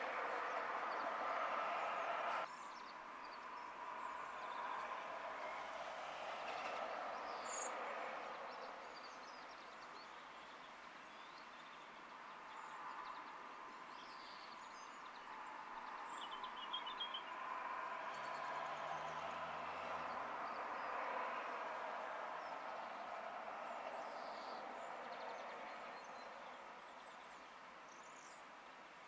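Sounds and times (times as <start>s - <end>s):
distant vehicle hum: 0.0s - 2.5s, 3.6s - 9.5s, 15.4s - 27.4s
birds chirping: 0.0s - 5.7s.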